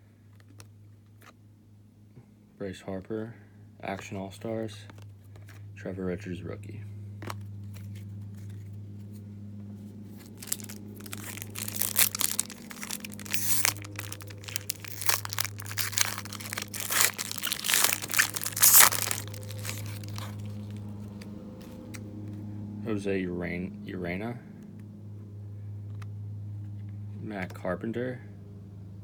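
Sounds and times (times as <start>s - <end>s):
steady low hum: 0.0s - 29.0s
foil wrapper tearing and crinkling: 10.2s - 22.0s.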